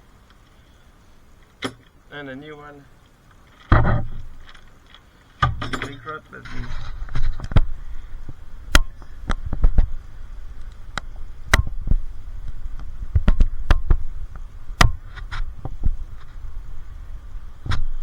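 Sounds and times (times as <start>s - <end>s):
hand tools clinking on metal: 5.6s - 6.7s
steady low rumble: 6.6s - 18.0s.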